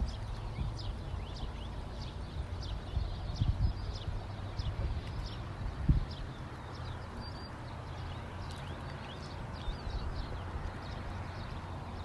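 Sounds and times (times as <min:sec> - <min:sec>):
small birds chirping: 0:00.0 - 0:12.0
steady outdoor rush: 0:00.0 - 0:12.0
wind rumbling on microphone: 0:00.0 - 0:12.0.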